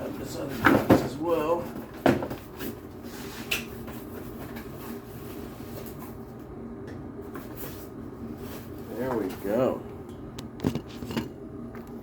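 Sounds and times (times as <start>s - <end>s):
steady low hum: 2.4s - 12.0s.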